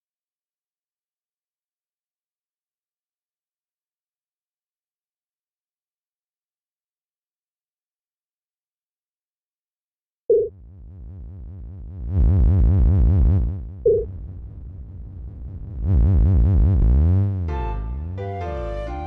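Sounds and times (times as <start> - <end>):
low electronic whoosh: 10.5 - 19.0
short electronic beep: 13.9 - 14.1
music: 15.4 - 19.0.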